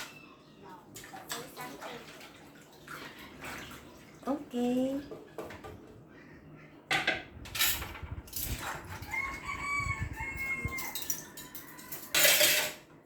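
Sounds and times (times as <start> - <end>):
water splashing: 0.9 - 5.0
dishes clattering: 6.9 - 9.6, 10.3 - 13.0
rooster crowing: 9.0 - 12.5.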